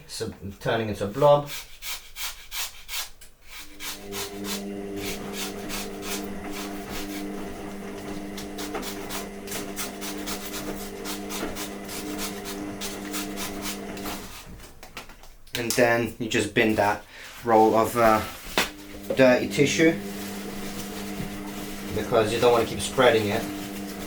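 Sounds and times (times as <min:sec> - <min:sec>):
tissue rubbing on sheet: 0:16.8 - 0:24.0.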